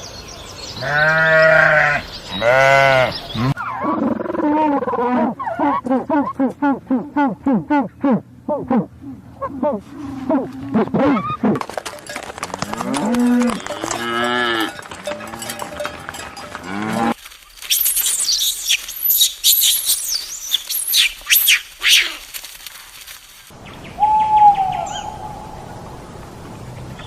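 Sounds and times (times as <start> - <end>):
cattle mooing: 0.9 - 4.0, 12.4 - 17.2
high-pitched chirping: 17.7 - 21.6.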